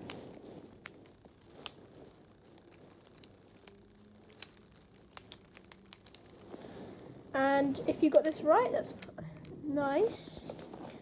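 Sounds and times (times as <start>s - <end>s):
small cubes clicking together: 0.0s - 7.1s, 8.0s - 9.6s.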